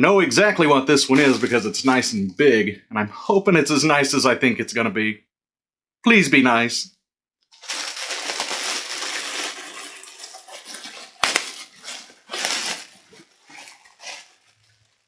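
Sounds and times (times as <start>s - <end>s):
plastic packaging crinkling: 1.1s - 1.8s, 7.5s - 15.0s.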